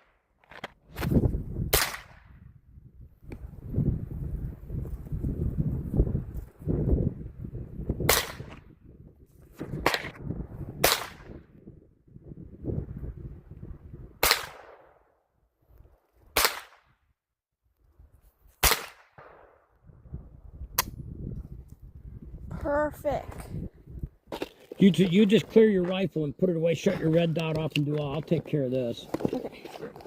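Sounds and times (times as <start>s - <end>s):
rifle shots: 16.4s - 16.8s, 18.6s - 19.6s.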